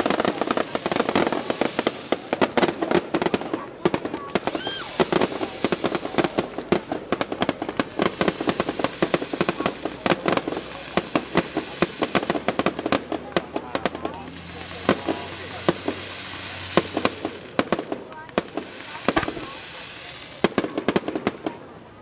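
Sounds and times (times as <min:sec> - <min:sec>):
fireworks cracks and bangs: 0:00.0 - 0:21.8
people's voices: 0:00.0 - 0:22.0
firework whistle: 0:04.4 - 0:06.0.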